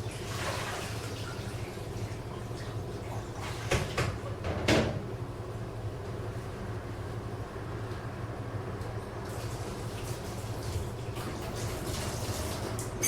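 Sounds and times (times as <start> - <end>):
washing machine humming: 0.0 - 13.0
dishes knocking and water splashing: 3.5 - 5.0.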